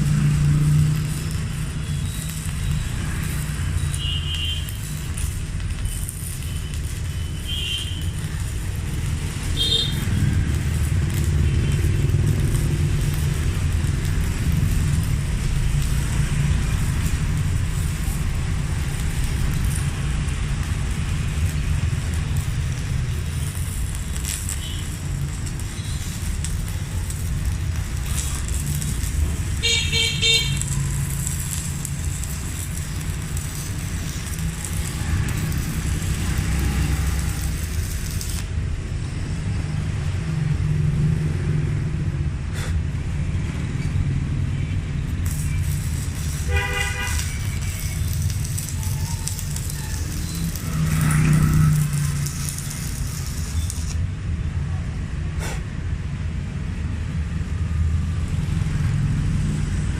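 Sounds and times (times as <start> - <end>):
street traffic: 0.0 - 59.9
welding arc sizzling and crackling: 0.0 - 59.9
car horn honks: 46.5 - 47.4.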